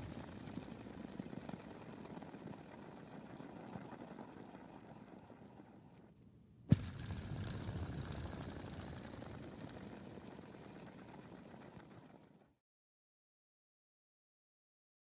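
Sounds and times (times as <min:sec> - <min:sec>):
fidget spinner whirring: 0:00.0 - 0:06.1, 0:06.7 - 0:12.6.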